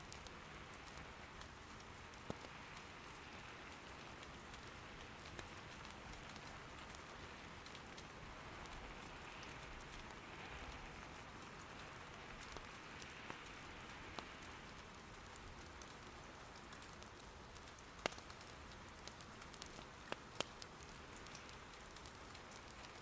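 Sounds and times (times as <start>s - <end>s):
soft rain patter: 0.0s - 23.0s
firewood popping: 16.8s - 23.0s.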